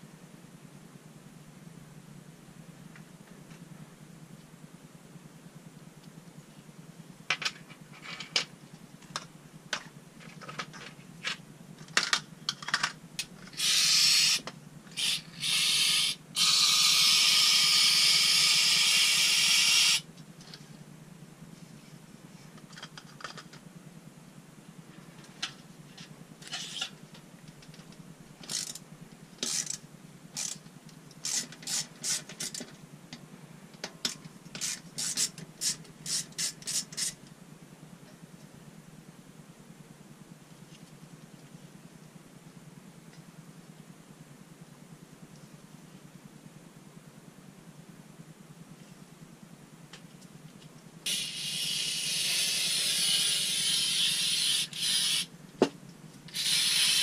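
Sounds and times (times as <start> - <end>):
aerosol spray can hissing: 13.6 - 14.4, 15.0 - 20.0, 51.1 - 55.3, 56.3 - 57.0.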